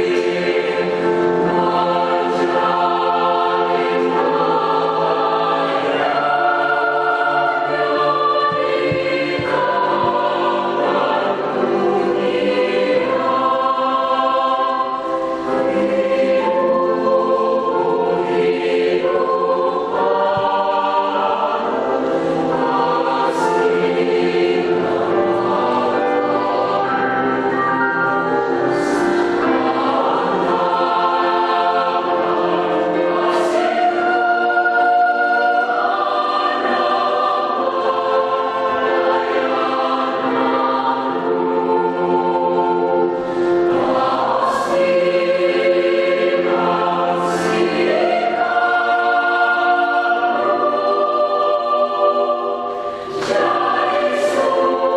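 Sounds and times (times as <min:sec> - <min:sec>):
choir singing a hymn: 0:00.0 - 0:54.9.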